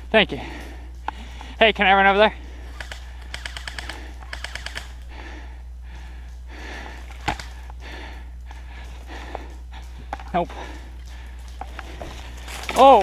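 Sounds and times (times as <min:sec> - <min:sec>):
airsoft guns firing bursts: 0:02.7 - 0:05.1.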